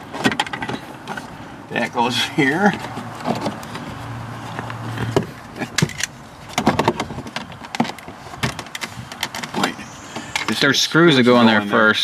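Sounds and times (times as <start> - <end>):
plastic parts clicking and knocking: 4.6 - 9.8.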